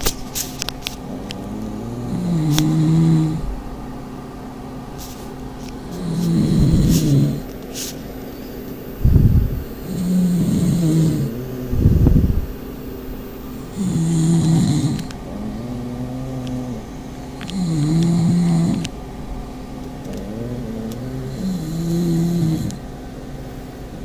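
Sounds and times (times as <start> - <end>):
dog snoring: 1.0 - 3.6, 5.8 - 7.5, 9.0 - 12.6, 13.6 - 18.9, 20.0 - 22.8.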